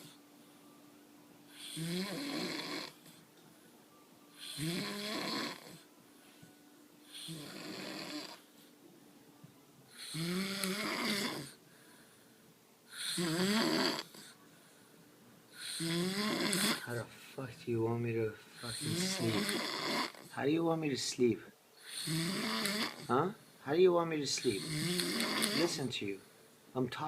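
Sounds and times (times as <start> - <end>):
person snoring heavily: 1.5 - 3.0, 4.4 - 5.8, 7.1 - 8.4, 9.9 - 11.6, 12.9 - 14.4, 15.6 - 17.0, 18.6 - 20.3, 21.8 - 23.2, 24.5 - 25.8.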